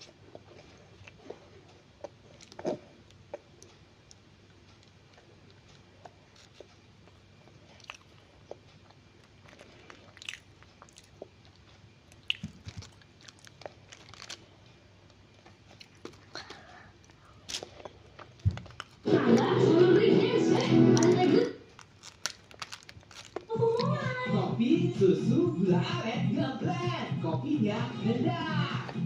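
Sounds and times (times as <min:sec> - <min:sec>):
person chewing crunchy pastry: 0:00.0 - 0:19.6, 0:20.6 - 0:23.9.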